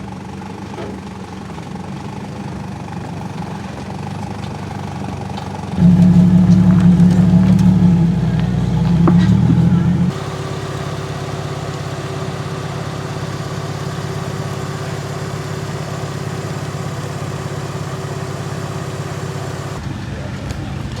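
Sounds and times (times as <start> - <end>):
car engine running steadily: 0.0 - 19.9.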